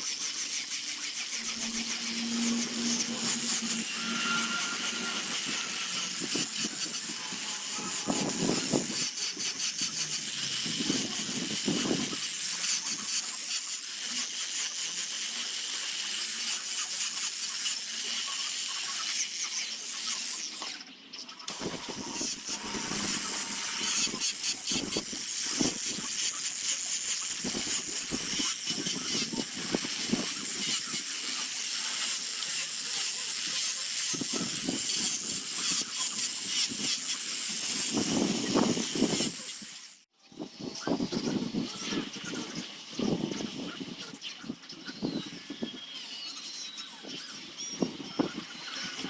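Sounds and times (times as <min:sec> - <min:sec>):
tool rasping wood: 0:00.0 - 0:20.7, 0:21.5 - 0:40.0.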